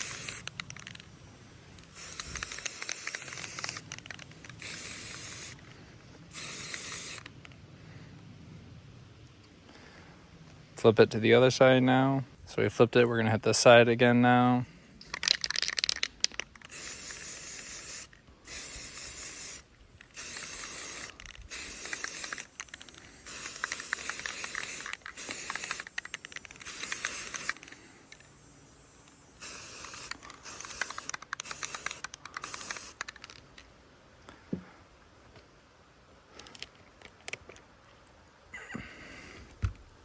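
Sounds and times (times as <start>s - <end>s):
spray paint can hissing: 0.0s - 1.2s, 1.8s - 5.6s, 6.2s - 7.4s, 15.0s - 28.4s, 29.0s - 33.4s.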